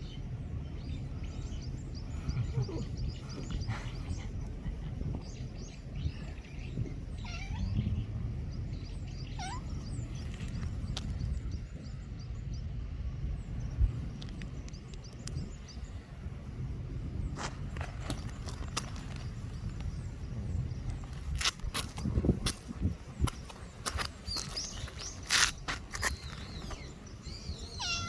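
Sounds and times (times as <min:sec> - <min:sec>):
birds chirping: 0:00.0 - 0:28.0
low outdoor rumble: 0:00.0 - 0:28.0
kitten mewing: 0:07.2 - 0:07.7, 0:09.3 - 0:09.7, 0:27.8 - 0:28.0.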